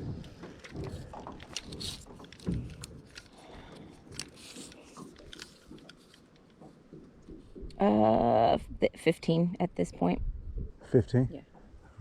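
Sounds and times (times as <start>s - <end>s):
light clicks and rustles: 0.0s - 7.8s
handling noises in a boat: 0.0s - 8.4s, 11.4s - 12.0s.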